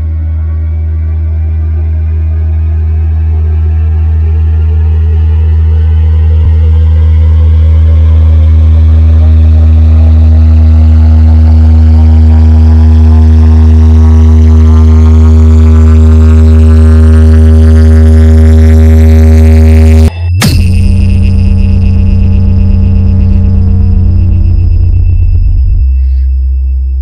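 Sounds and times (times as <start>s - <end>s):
deep electronic bass drone: 0.0s - 27.0s
sharp electronic hit: 19.7s - 27.0s.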